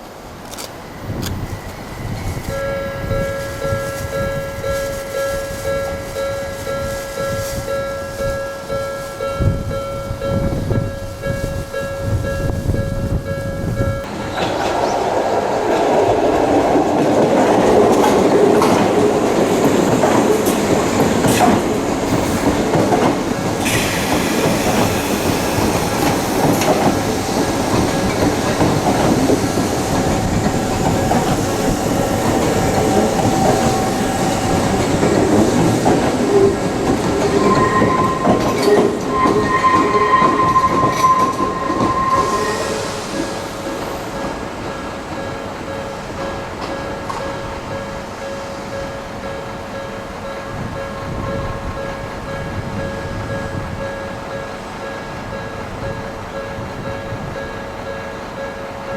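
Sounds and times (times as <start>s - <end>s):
train wheels clattering over rail joints: 14.0s - 47.5s
wheel squeals: 23.7s - 43.0s.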